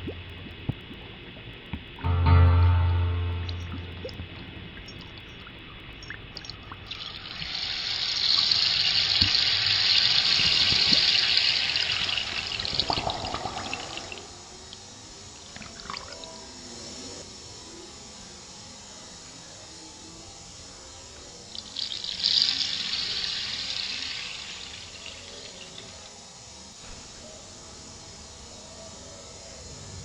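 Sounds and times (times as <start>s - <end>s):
water trickling: 0.0s - 16.5s, 21.4s - 26.8s.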